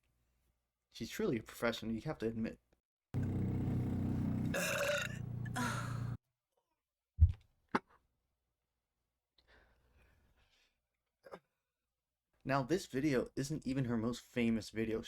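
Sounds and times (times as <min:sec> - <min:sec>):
woman burping: 0:04.5 - 0:06.1.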